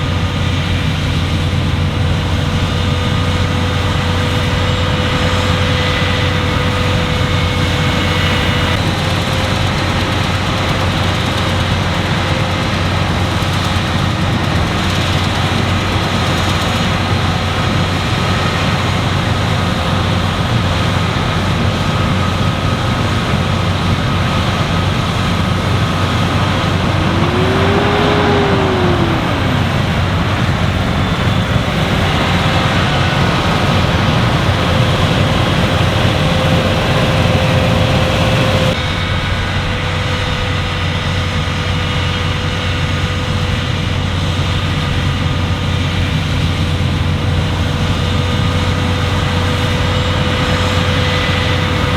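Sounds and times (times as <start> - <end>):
combine harvester drone: 0.0 - 51.9
rising and falling tone: 25.5 - 38.8.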